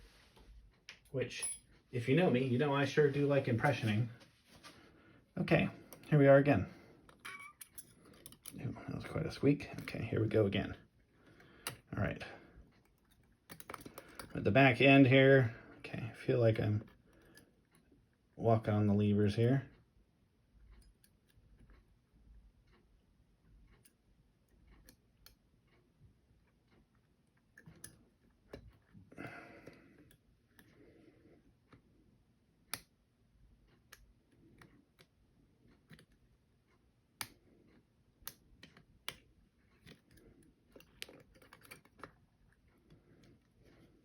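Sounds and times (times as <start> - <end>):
small metal clicks of lock picking: 7.1 - 8.6, 12.7 - 14.4, 23.7 - 25.4, 26.4 - 29.0, 38.2 - 42.4.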